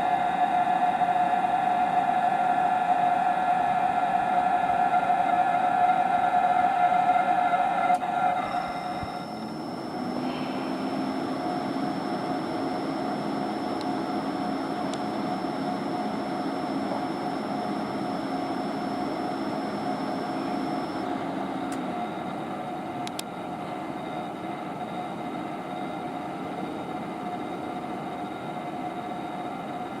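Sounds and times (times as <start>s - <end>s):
high thin whine: 0.0s - 22.0s
cooling fan whirring: 0.0s - 30.0s
low hum: 8.0s - 22.3s
mid-pitched tone: 8.4s - 21.3s.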